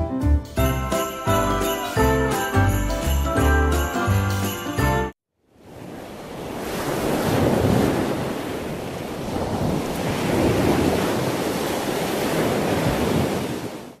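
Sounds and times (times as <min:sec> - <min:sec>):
ocean waves washing in: 0:05.4 - 0:14.0.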